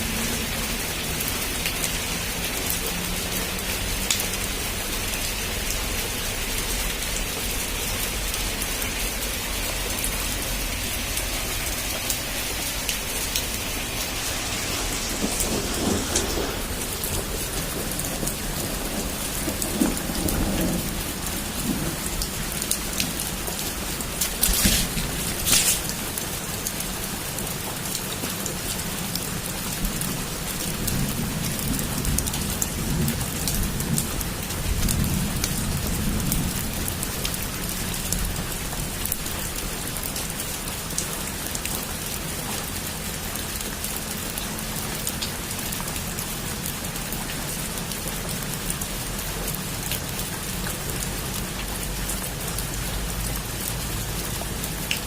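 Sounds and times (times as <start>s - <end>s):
heavy rain falling: 0.0s - 55.0s
distant thunder rumble: 10.2s - 26.2s.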